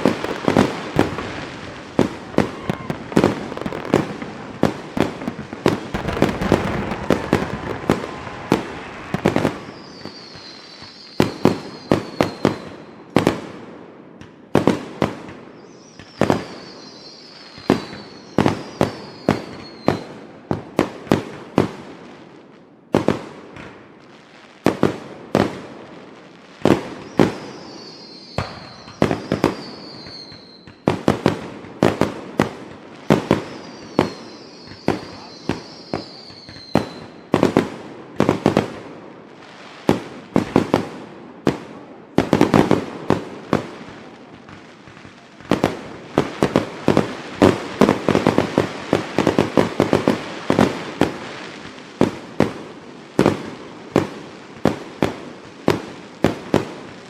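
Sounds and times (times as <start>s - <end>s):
fireworks crackling: 0.0s - 13.3s, 26.7s - 57.0s
fireworks bangs: 0.0s - 13.6s, 26.7s - 57.0s
high falling whistles: 6.0s - 12.4s, 33.5s - 37.0s.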